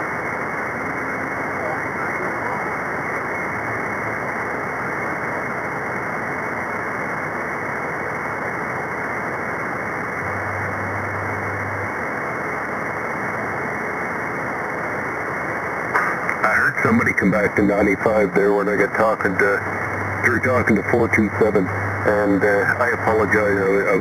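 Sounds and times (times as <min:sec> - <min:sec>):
radio static hiss: 0:00.0 - 0:24.0
faint low hum: 0:09.6 - 0:14.3, 0:15.9 - 0:24.0.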